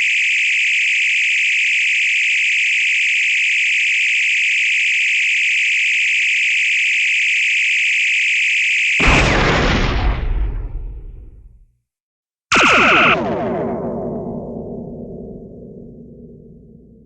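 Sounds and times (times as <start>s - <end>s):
loud blast with deep rumble: 9.0s - 11.7s, 12.5s - 17.0s.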